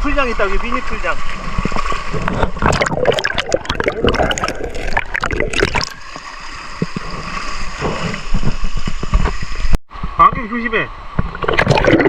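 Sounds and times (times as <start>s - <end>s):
stream water gurgling: 0.1s - 9.7s, 11.2s - 12.0s
sharp water splashing: 1.6s - 6.4s.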